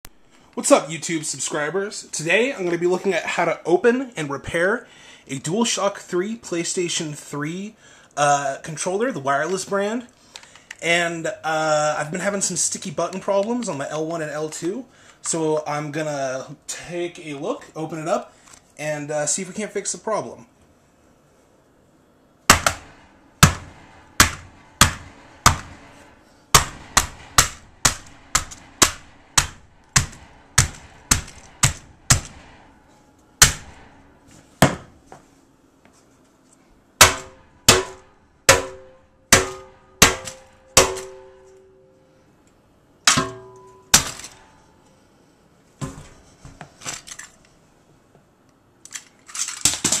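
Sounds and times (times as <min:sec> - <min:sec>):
sharp percussive hits: 0:22.5 - 0:34.2, 0:37.0 - 0:41.7.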